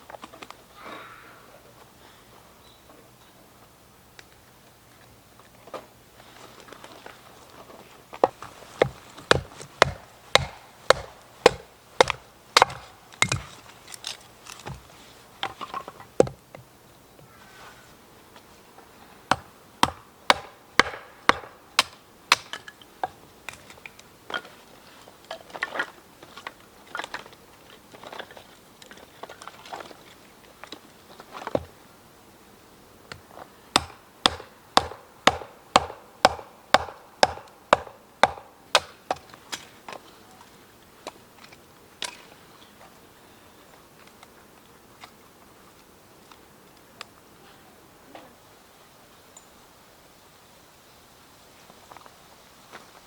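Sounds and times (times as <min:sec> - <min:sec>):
sharp chopping strikes: 0:08.2 - 0:13.6, 0:19.3 - 0:22.6, 0:33.8 - 0:39.2.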